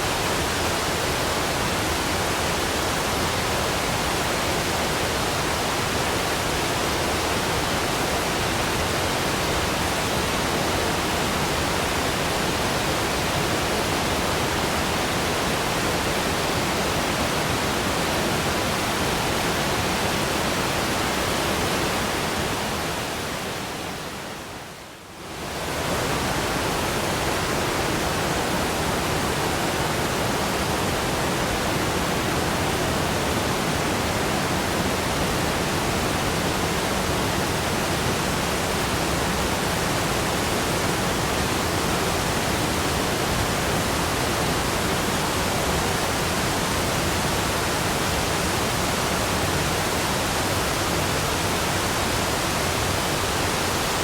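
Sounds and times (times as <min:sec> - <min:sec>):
waterfall rushing: 0:00.0 - 0:54.0.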